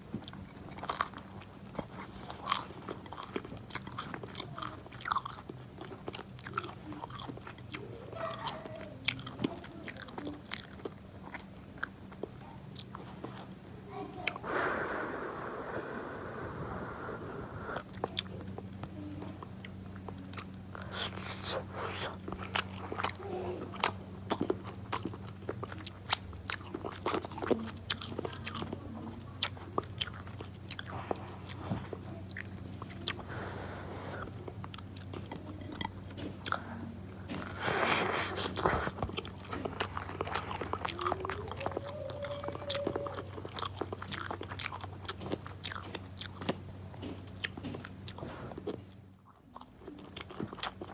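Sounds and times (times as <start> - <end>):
chewing and biting: 0.0 - 14.5, 17.7 - 33.4, 34.2 - 50.9
steady low hum: 8.8 - 50.9
hissing rush: 14.4 - 18.0.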